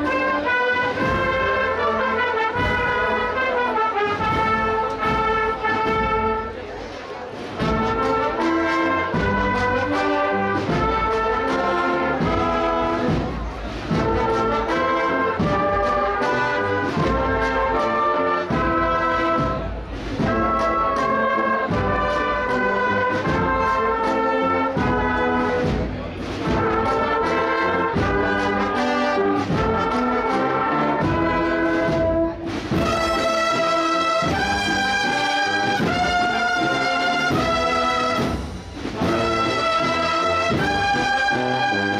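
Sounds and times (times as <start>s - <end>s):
steady drum beat: 0.0s - 6.7s, 7.4s - 41.9s
brass band march: 0.0s - 41.9s.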